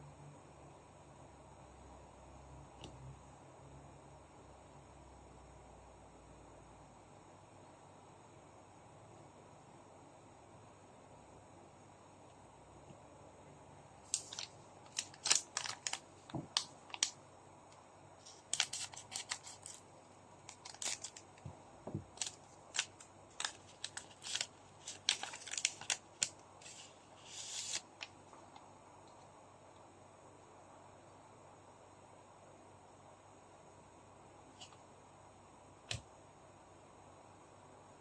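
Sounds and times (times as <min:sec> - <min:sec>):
foil wrappers crinkling: 0:14.1 - 0:17.2, 0:18.2 - 0:19.8, 0:20.4 - 0:21.4, 0:22.1 - 0:28.1
wrapper rustling: 0:14.1 - 0:17.2, 0:18.3 - 0:19.8, 0:20.4 - 0:21.3, 0:22.1 - 0:28.0.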